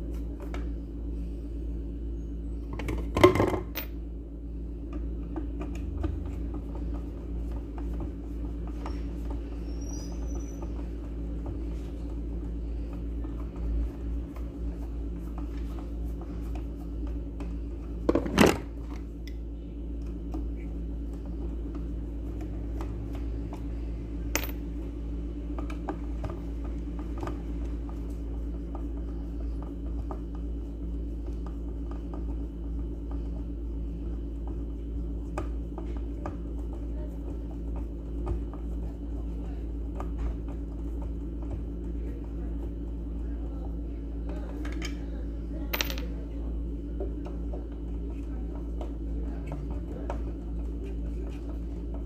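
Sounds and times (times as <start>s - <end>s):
steady low hum: 0.0s - 52.0s.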